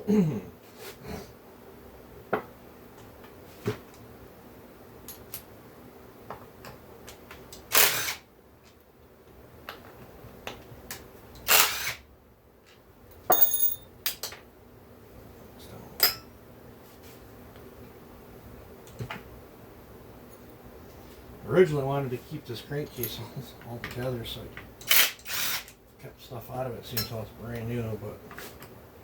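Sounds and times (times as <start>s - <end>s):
metal parts clicking on a bench: 12.7s - 14.4s
metal clinks: 13.2s - 13.9s
bright metallic ring: 13.3s - 13.9s.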